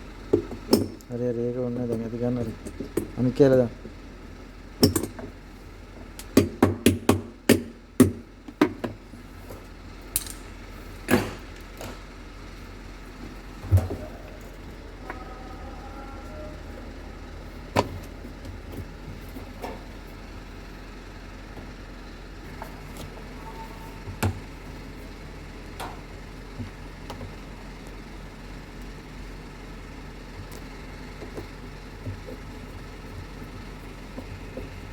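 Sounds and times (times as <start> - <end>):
steady low hum: 0.0 - 34.9
hard parts knocking and clattering: 1.7 - 4.0, 4.8 - 5.4.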